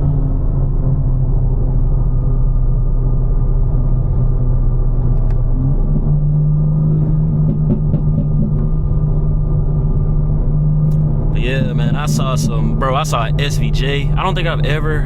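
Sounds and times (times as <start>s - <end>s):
car engine droning: 0.0s - 15.0s.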